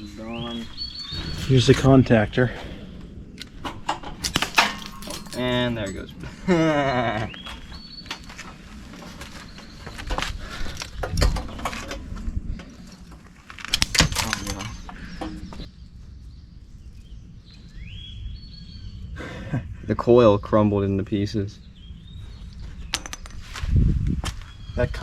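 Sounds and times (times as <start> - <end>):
metal crashing and clattering: 4.0 - 5.9.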